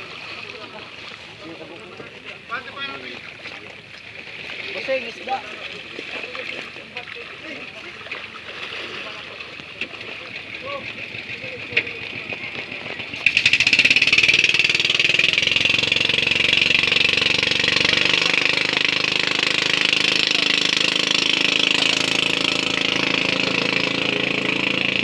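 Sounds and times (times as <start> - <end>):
small engine running: 10.0 - 25.0.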